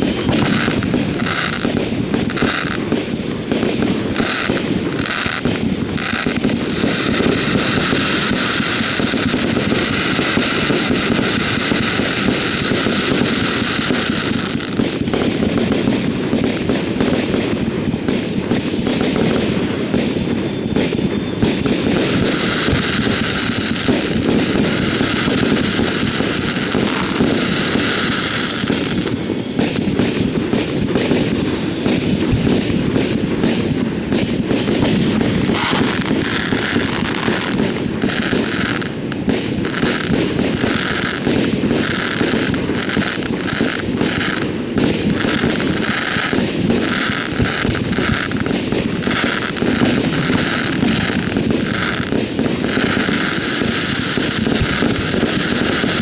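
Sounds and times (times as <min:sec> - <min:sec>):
crackling hiss: 0:00.0 - 0:56.0
fireworks bangs and pops: 0:00.0 - 0:56.0.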